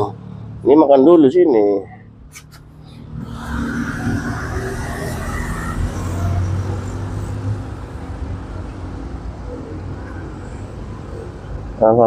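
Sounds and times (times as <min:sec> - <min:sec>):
vehicle engine humming: 0:00.0 - 0:12.0
rushing noise: 0:02.4 - 0:11.4.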